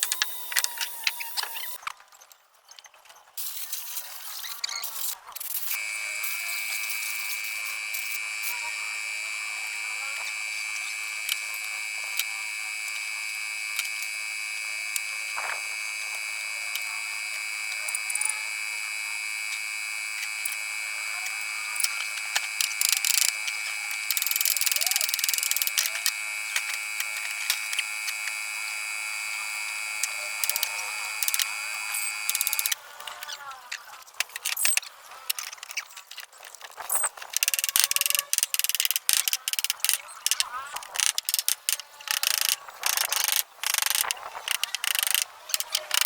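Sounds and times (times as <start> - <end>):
power tool whining: 0.0 - 1.8, 5.6 - 33.3
scattered clicks: 19.4 - 28.4, 30.0 - 46.0.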